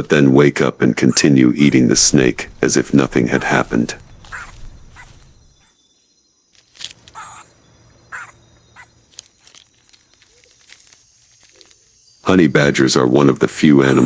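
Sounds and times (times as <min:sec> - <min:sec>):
faint nature ambience: 0:00.0 - 0:14.0
short bird calls: 0:01.0 - 0:05.9, 0:07.1 - 0:09.5.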